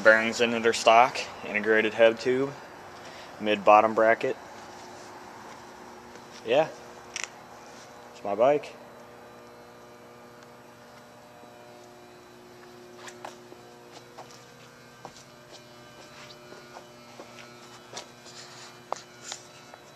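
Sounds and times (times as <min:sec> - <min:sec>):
electrical hum: 0:00.0 - 0:19.9.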